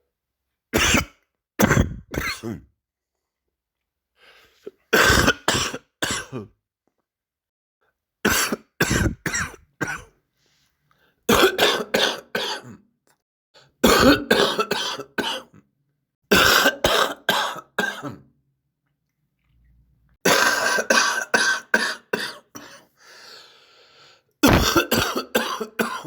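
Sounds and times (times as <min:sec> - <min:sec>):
person coughing wetly: 0:00.8 - 0:02.7, 0:04.9 - 0:06.5, 0:08.3 - 0:10.1, 0:11.3 - 0:12.8, 0:13.8 - 0:15.6, 0:16.3 - 0:18.3, 0:20.2 - 0:22.9, 0:24.4 - 0:26.0.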